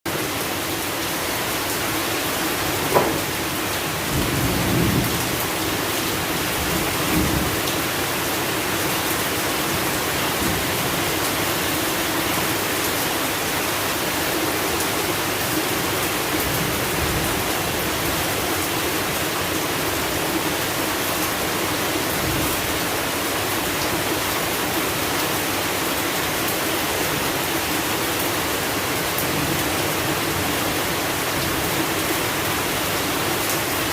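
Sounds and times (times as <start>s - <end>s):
steady rain falling: 0.1s - 33.9s.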